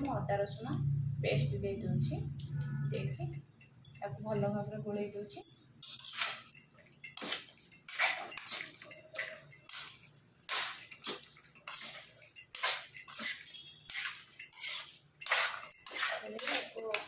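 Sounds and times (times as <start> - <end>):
wet mixing of meat in bowl: 5.7 - 17.0.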